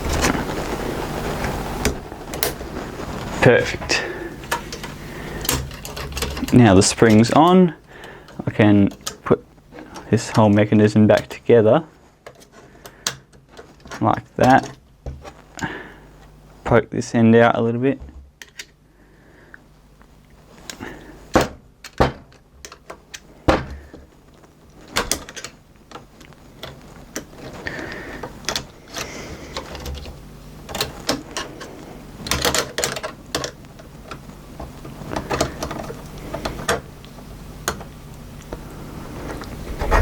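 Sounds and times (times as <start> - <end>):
faint low hum: 0.0 - 40.0
small plastic parts clicking: 4.4 - 10.5, 21.8 - 23.3, 24.8 - 38.6.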